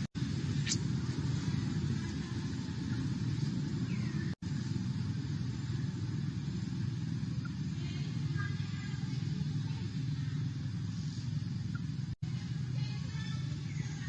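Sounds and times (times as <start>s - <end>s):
steady low rumble: 0.0s - 14.0s
faint high chirps: 11.5s - 12.0s.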